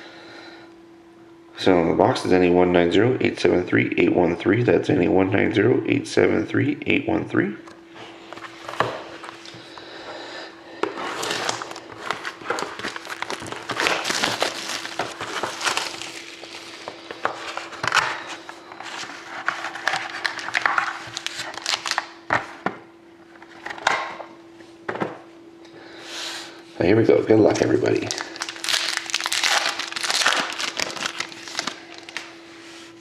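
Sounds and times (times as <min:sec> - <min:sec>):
faint hum: 0:00.0 - 0:33.0
plastic shrink-wrap crinkling: 0:11.0 - 0:22.2, 0:27.6 - 0:32.4.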